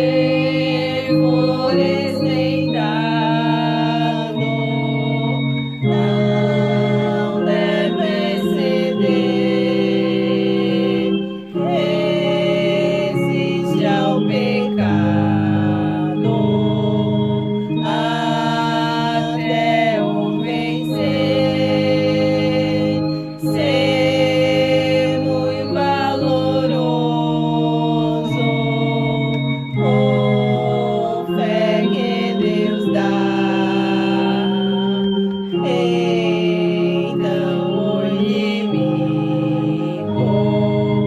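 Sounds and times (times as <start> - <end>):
organ playing a slow hymn: 0.0 - 41.0.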